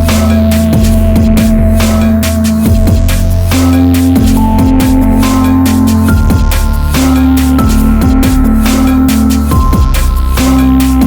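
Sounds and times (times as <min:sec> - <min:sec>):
electronic music: 0:00.0 - 0:11.0.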